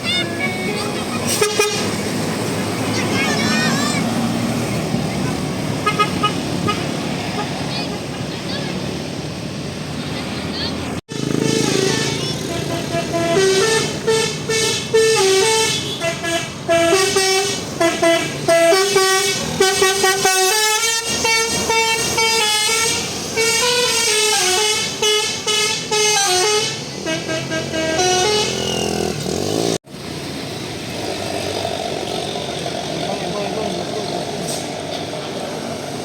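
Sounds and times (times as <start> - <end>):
musical bus air horn melody: 0.3 - 2.0, 5.8 - 7.5, 11.1 - 29.2.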